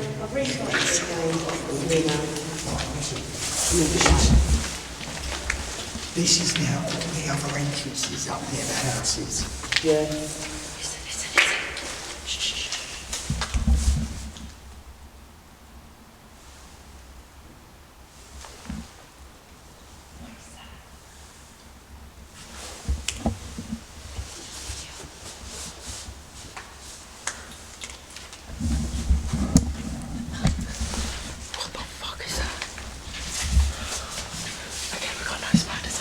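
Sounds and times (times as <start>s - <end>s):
footsteps: 0.0s - 14.6s, 22.4s - 36.0s
rustling: 0.0s - 15.1s, 18.1s - 36.0s
light clicks and scuffs: 0.2s - 14.6s, 22.4s - 36.0s.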